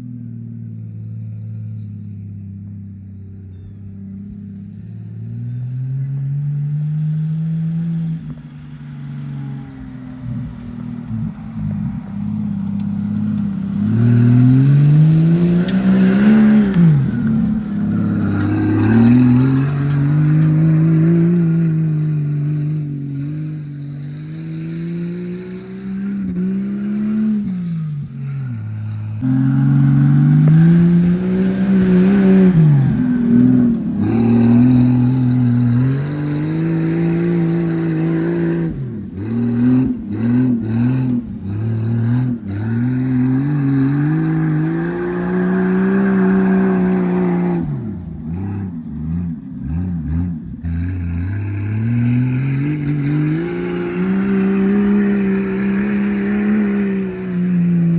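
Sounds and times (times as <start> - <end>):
car engine revving: 0.6 - 57.9.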